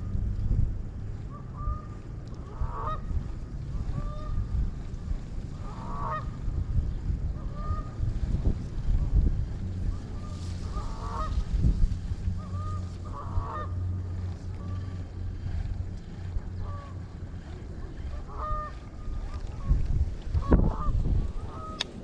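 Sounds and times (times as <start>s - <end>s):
wind buffeting microphone: 0.0s - 22.0s
geese honking: 2.5s - 3.1s, 5.6s - 6.3s, 7.4s - 7.9s, 10.0s - 11.5s, 12.3s - 15.2s, 16.6s - 19.8s, 20.4s - 21.8s.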